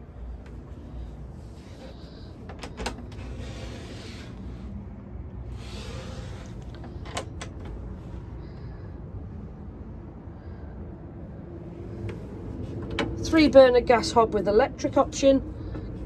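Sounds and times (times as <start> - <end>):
low steady rumble: 0.0 - 16.0
sharp clicks and knocks: 6.6 - 7.9.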